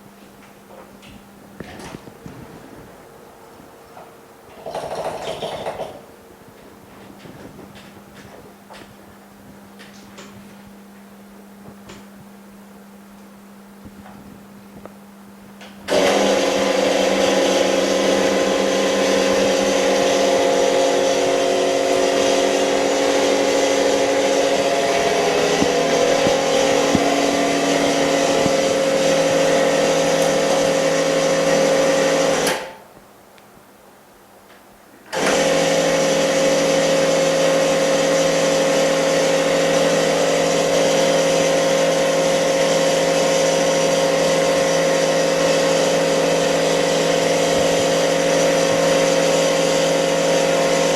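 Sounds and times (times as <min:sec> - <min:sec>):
electric motor humming: 0:15.9 - 0:32.5.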